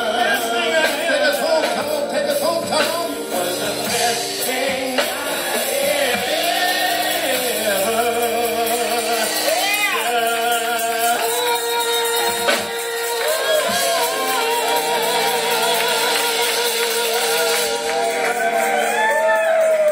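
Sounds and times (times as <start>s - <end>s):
instrumental accompaniment: 0.0s - 19.9s
person singing long notes: 6.3s - 19.6s.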